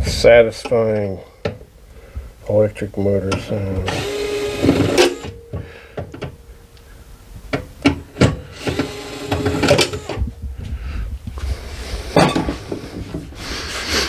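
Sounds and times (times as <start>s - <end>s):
electric driver motor whining: 3.4s - 6.9s, 8.0s - 10.5s.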